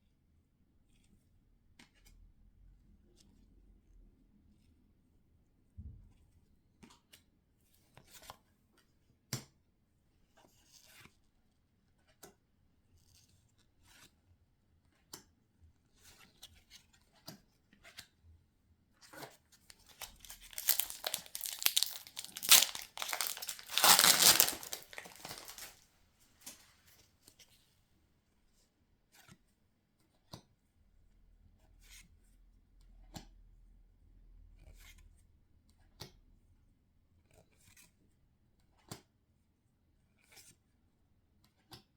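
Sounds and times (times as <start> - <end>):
foil pack tearing and crinkling: 19.7 - 25.8
foil wrapper rustling: 19.7 - 25.8.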